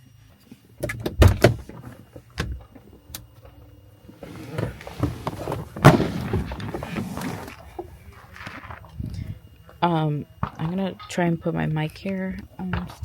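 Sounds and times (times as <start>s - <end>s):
outside noise: 0.0s - 13.0s
car door shutting: 4.2s - 7.6s.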